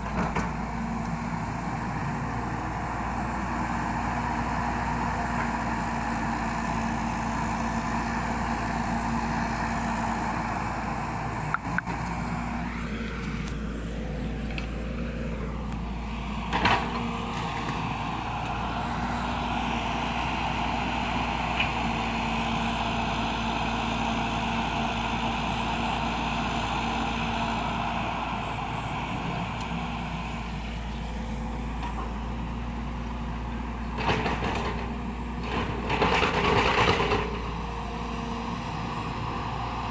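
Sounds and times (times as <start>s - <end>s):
excavator engine running: 0.0s - 39.9s.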